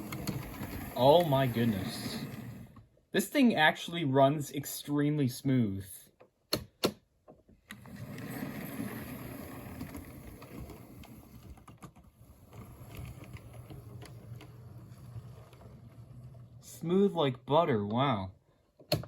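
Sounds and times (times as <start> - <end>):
wheels clicking on rails: 0.0 - 2.7.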